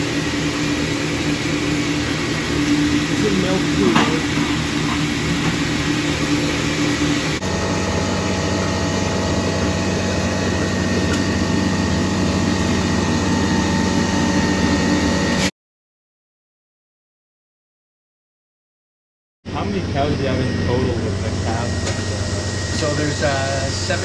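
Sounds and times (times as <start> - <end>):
loud machinery hum: 0.0 - 15.5, 19.5 - 24.0.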